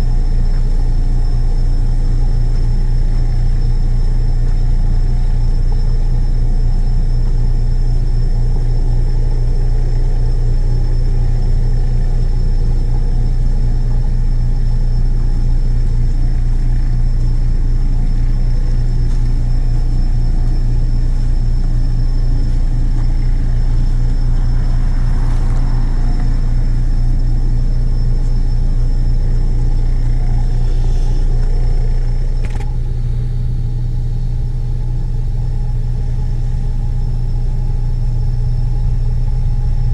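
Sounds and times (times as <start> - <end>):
low engine rumble: 0.0 - 39.9
thin high whine: 0.0 - 39.9
click: 32.4 - 32.7.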